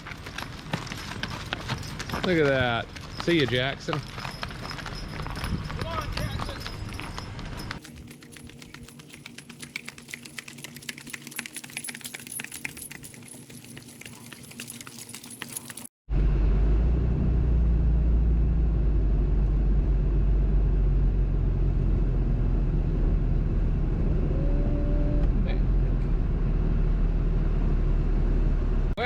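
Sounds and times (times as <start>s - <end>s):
harness hardware jingling: 0.0s - 15.9s
hoof clicks: 0.0s - 15.9s
vehicle engine and road rumble: 0.0s - 29.0s.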